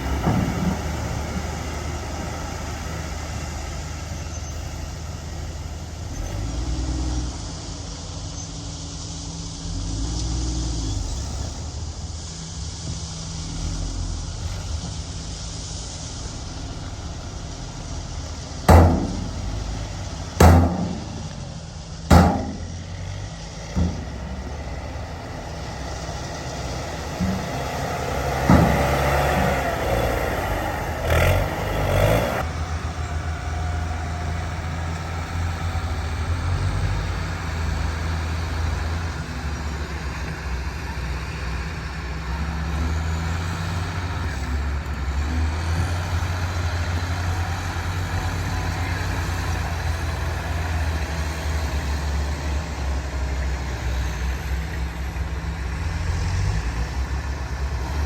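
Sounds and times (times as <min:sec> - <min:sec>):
heavy diesel machinery running: 0:00.0 - 0:58.0
loud bangs: 0:17.3 - 0:23.0.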